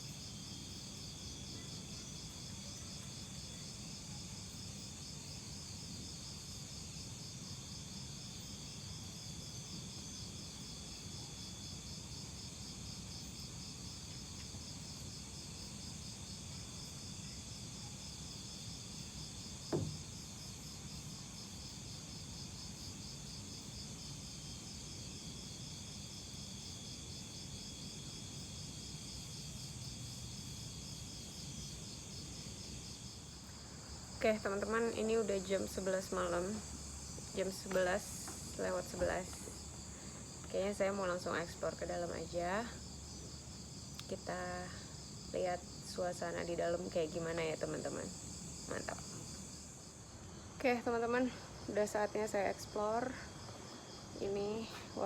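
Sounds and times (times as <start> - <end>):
crickets trilling: 0.0 - 55.0
sharp knock: 19.7 - 20.0.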